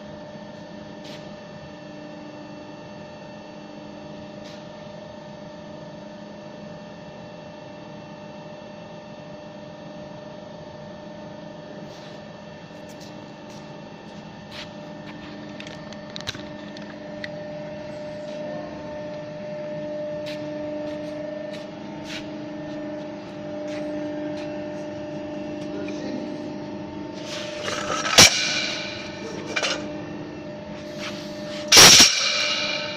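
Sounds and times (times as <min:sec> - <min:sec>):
machine hum with held tones: 0:00.0 - 0:32.9
loud metal clangs: 0:27.2 - 0:30.0, 0:31.7 - 0:32.9.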